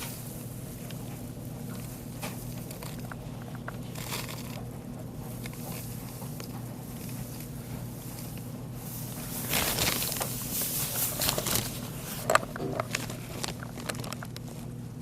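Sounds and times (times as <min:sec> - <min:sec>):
grain bag rustling: 0:00.0 - 0:14.6
low hum: 0:00.0 - 0:15.0.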